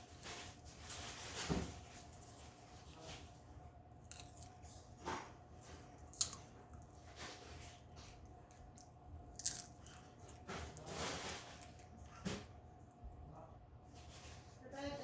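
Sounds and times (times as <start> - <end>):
person chewing crunchy food: 4.0 - 4.7, 5.8 - 7.0, 8.1 - 11.9.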